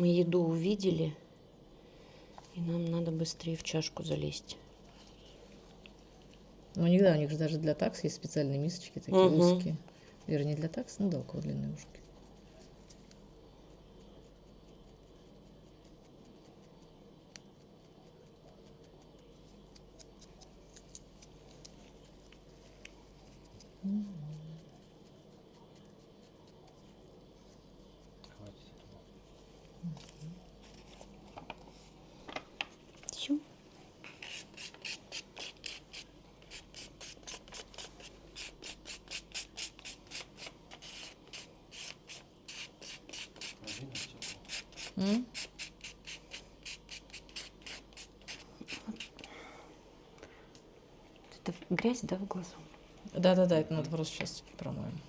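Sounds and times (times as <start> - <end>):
low steady hum: 0.0 - 55.0
rapid rhythmic rubbing strokes: 34.2 - 49.2.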